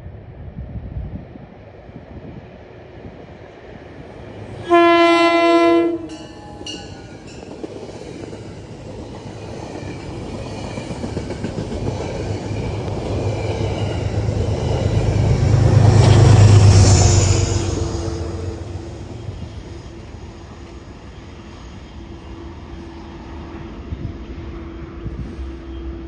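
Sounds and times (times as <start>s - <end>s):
train rumbling: 0.0s - 26.0s
train horn blast: 4.6s - 6.9s, 15.8s - 19.4s.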